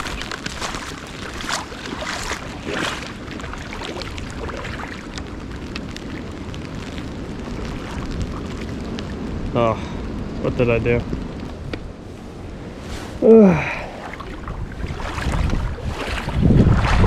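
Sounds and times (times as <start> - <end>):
river water rushing: 0.0 - 5.2
wind buffeting microphone: 0.0 - 17.0.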